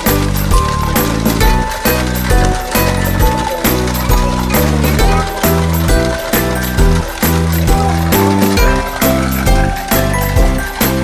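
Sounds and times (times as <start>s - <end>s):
background music with steady beat: 0.0s - 11.0s.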